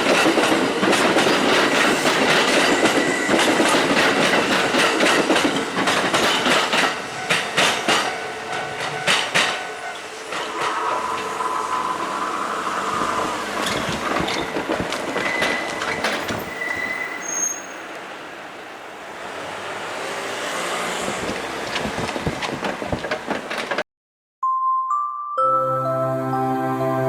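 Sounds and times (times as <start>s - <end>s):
wheels clicking over rail joints: 0.0s - 23.9s
high wheel squeals: 7.0s - 18.4s.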